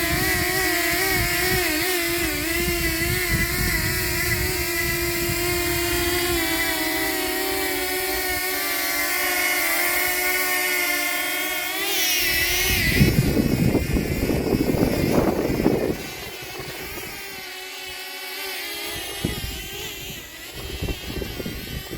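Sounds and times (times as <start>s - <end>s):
wind buffeting microphone: 0.0s - 8.5s, 12.2s - 17.5s, 18.9s - 21.9s
drone propellers whining: 0.0s - 21.9s.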